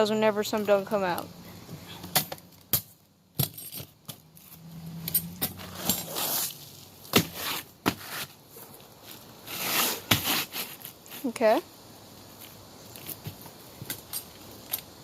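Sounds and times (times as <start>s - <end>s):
nailer air hiss: 9.4s - 10.8s.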